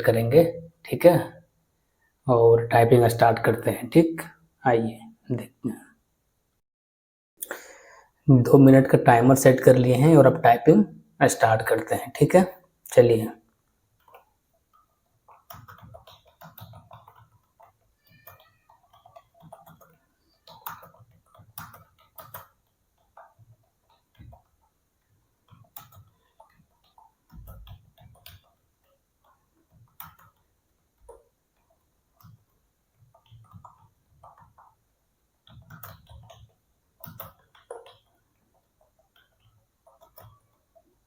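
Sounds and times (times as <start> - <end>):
keyboard typing clicks: 14.0 - 40.9.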